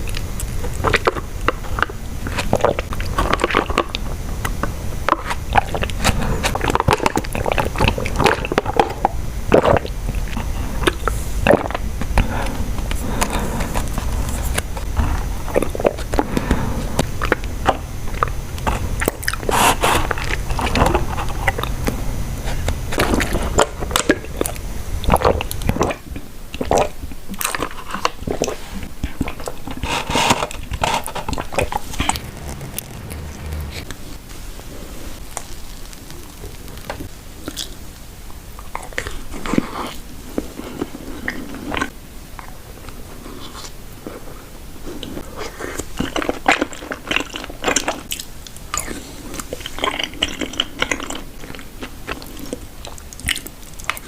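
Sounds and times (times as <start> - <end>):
low hum: 0.0 - 25.7, 31.3 - 37.4
chewing with wet clicks: 0.0 - 34.0, 38.6 - 43.7, 45.0 - 54.0.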